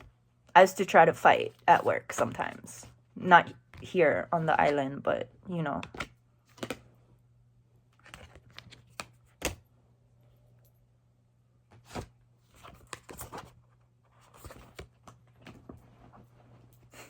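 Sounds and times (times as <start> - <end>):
low steady hum: 0.0 - 17.0
cards being shuffled: 5.8 - 6.8, 7.9 - 9.6.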